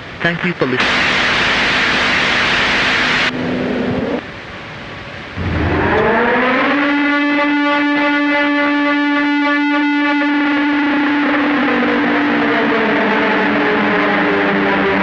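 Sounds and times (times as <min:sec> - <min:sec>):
loud static hiss: 0:00.0 - 0:05.7.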